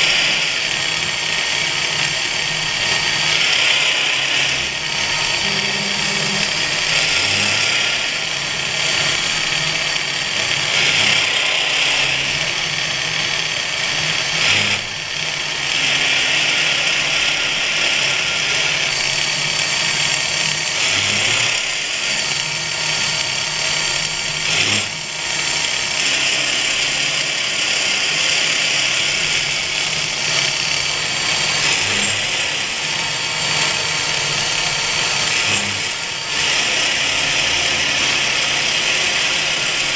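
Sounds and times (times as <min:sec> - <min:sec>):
spindle hum: 0:00.0 - 0:10.7
milling cutter cutting steel: 0:00.0 - 0:39.9.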